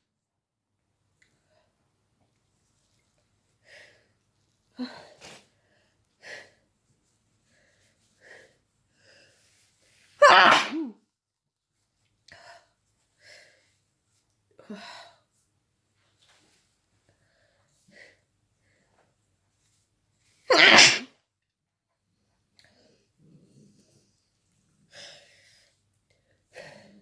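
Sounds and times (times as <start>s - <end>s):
person sneezing: 10.2s - 10.9s, 20.5s - 21.1s.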